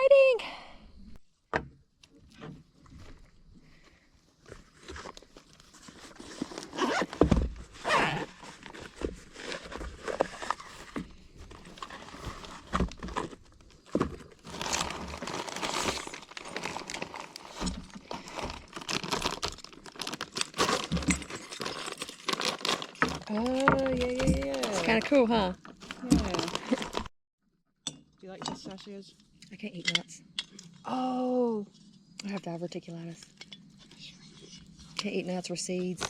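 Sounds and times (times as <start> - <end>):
packaging crinkling and rustling: 4.4 - 27.1.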